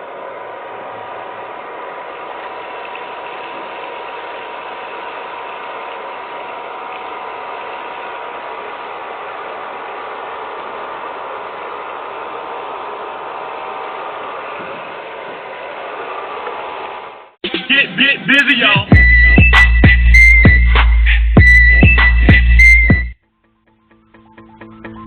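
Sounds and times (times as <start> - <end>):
small vacuum motor whirring: 0.0 - 17.3.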